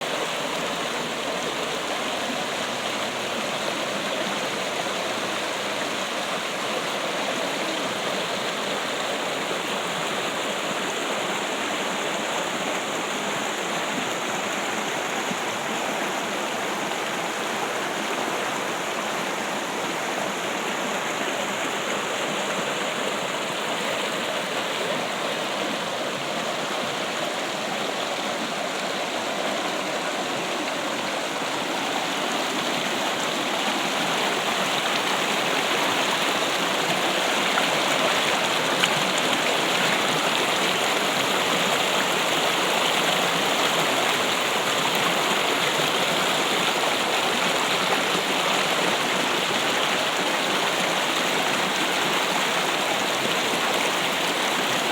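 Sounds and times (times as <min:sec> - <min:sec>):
stream trickling and rushing: 0:00.0 - 0:54.9.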